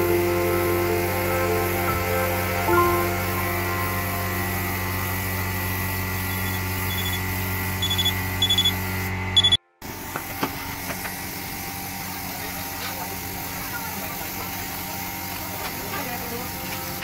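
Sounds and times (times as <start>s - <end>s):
steady hum: 0.0s - 15.5s
high-pitched electronic beeps: 6.3s - 7.2s, 7.8s - 8.8s, 9.4s - 9.6s.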